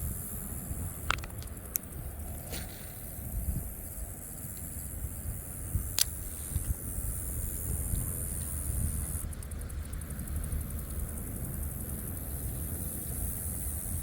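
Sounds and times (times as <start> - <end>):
high-pitched insect chorus: 0.0 - 14.0.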